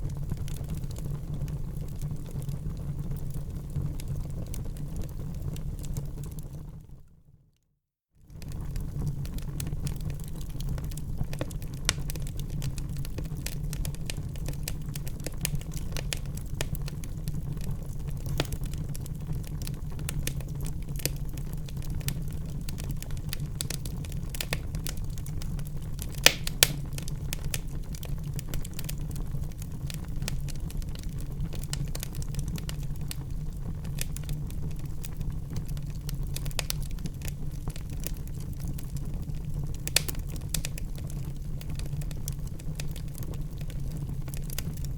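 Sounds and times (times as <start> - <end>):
wood fire crackling: 0.0 - 6.8, 8.3 - 44.9
loud fire snaps: 8.4 - 17.4, 18.0 - 44.9.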